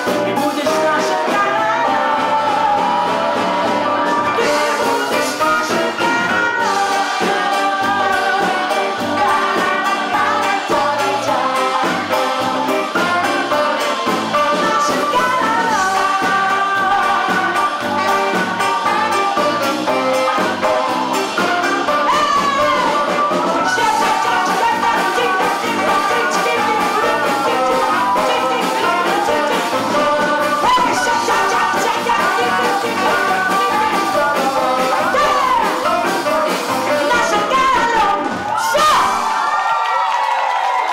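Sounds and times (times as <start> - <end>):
live jazz band playing: 0.0 - 39.5.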